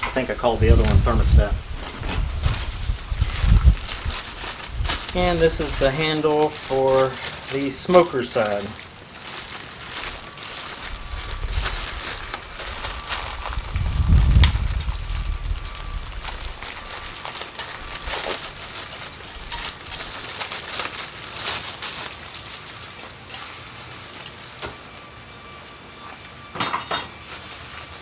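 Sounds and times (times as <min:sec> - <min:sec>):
packaging crinkling and rustling: 0:00.6 - 0:25.0, 0:27.2 - 0:28.0
metal parts clinking: 0:17.5 - 0:20.7.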